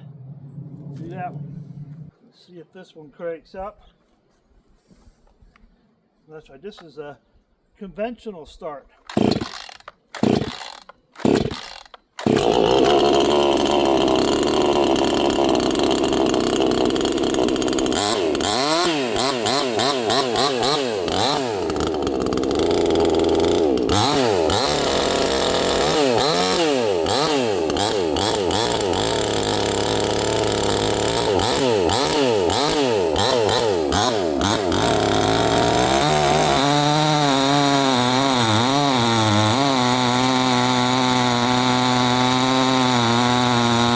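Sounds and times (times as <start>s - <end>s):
chainsaw starting and revving: 9.1s - 43.9s.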